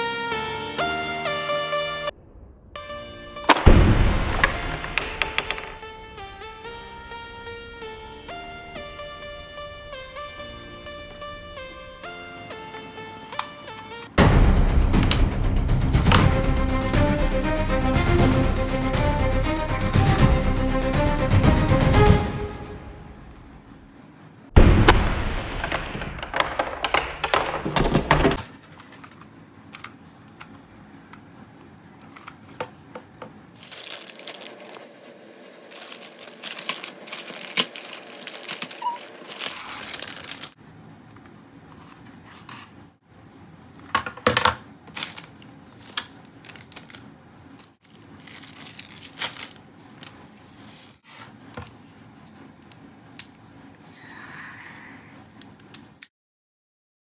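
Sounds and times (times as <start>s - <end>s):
parts clicking and knocking: 27.7s - 34.8s, 43.8s - 47.0s, 55.3s - 56.1s
plastic and paper tearing: 33.6s - 35.0s, 35.6s - 40.7s, 41.8s - 42.8s, 43.8s - 52.1s.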